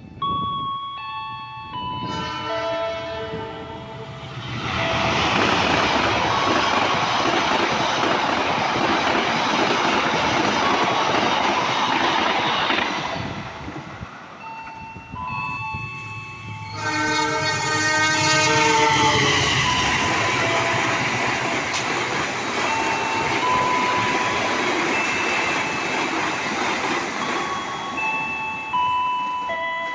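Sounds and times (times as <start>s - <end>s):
locomotive air horn chord: 2.0s - 5.4s, 16.5s - 21.8s
train wheels rumbling on rails: 3.1s - 29.9s.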